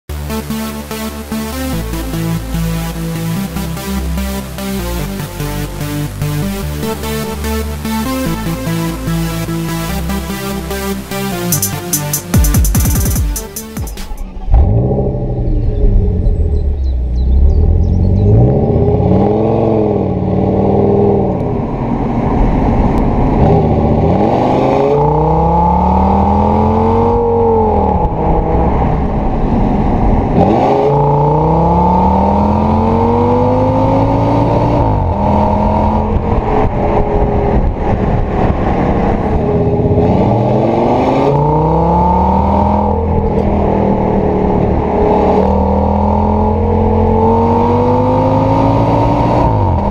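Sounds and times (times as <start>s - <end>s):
car engine revving: 0.1s - 49.9s.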